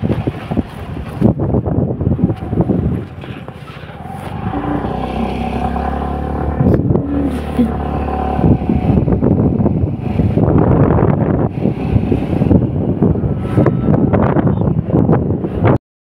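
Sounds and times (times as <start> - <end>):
wind noise on microphone: 0.0 - 15.8
vehicle engine running: 4.3 - 13.7.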